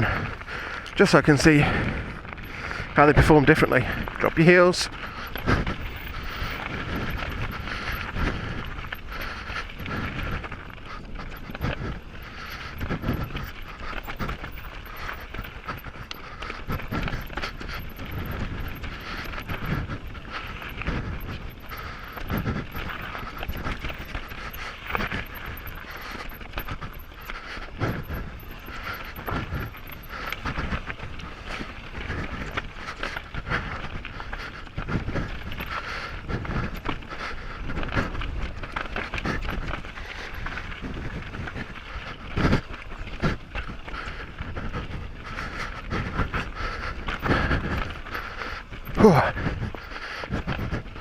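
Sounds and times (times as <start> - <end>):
mountain bike rattling on trail: 0.0 - 51.0
tyres on rock and gravel: 0.0 - 51.0.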